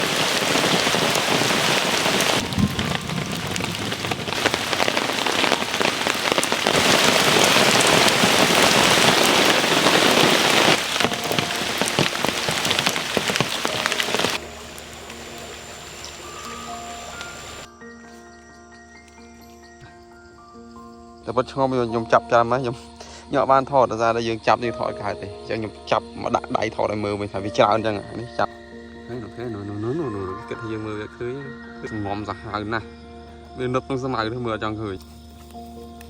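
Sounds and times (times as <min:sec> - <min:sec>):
heavy rain falling: 0:00.0 - 0:17.7.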